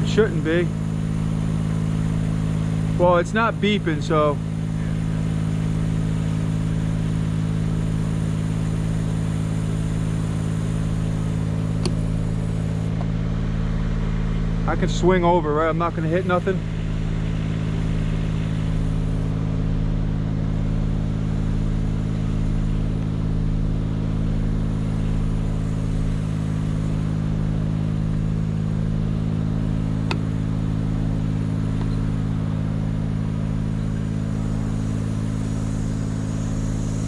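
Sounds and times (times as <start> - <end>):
engine humming: 0.0 - 37.0
sharp click: 11.8 - 12.1, 31.8 - 32.1.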